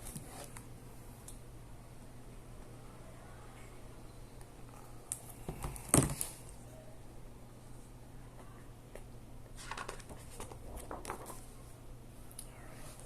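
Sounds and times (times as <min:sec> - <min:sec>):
low room hum: 0:00.0 - 0:13.0
book pages turning: 0:09.6 - 0:11.5.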